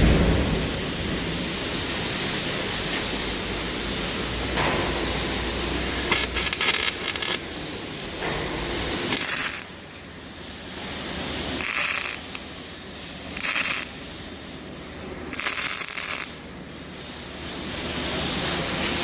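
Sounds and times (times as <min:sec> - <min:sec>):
low steady hum: 0:00.0 - 0:02.8.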